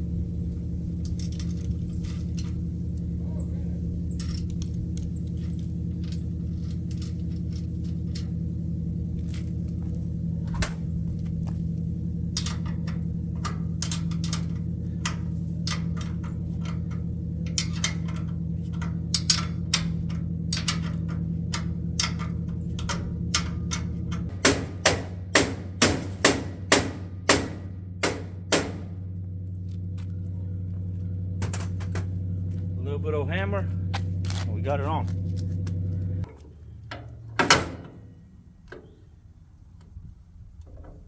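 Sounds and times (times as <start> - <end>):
steady low hum: 0.0 - 41.0
hammer striking metal: 24.3 - 29.0.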